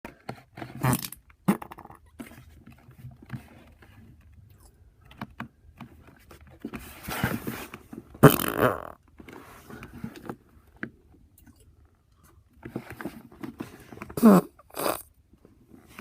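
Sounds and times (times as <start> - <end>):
person farting: 0.8 - 2.1, 8.2 - 9.0, 14.2 - 15.2
rustling: 6.0 - 8.3.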